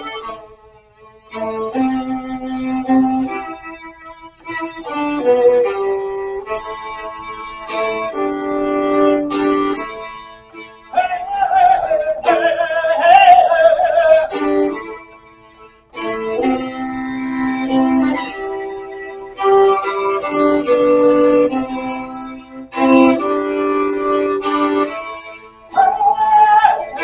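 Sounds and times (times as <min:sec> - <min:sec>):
backing accompaniment: 0:00.0 - 0:27.0
violin playing: 0:00.0 - 0:27.0
higher wavering melody: 0:25.7 - 0:27.0.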